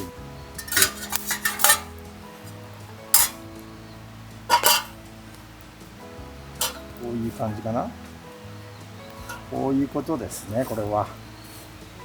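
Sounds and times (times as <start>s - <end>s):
background music: 0.0s - 12.0s
metal parts clinking and clattering: 0.6s - 1.9s.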